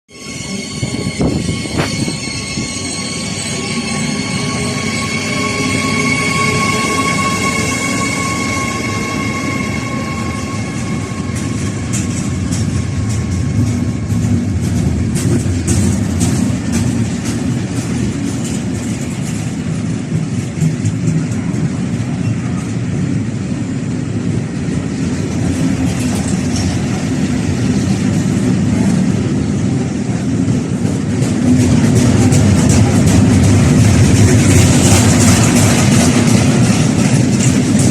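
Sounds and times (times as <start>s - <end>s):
wheel squeal: 0.1s - 12.7s
freight train wheels clattering: 0.2s - 37.9s.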